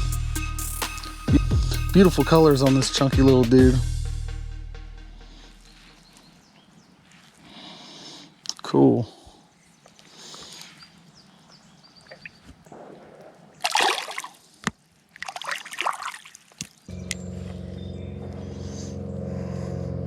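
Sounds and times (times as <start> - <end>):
creek water splashing: 5.7 - 18.6
steady low hum: 16.9 - 20.0.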